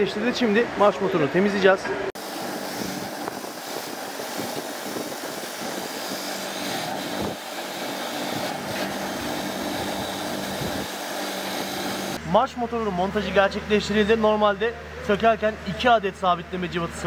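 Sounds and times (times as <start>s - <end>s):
workshop tool running: 2.2s - 12.2s.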